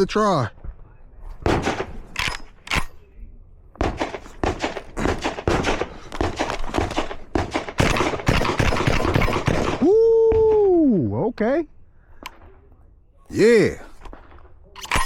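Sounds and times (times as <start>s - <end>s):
shotgun shots: 1.4s - 2.9s, 3.8s - 9.8s.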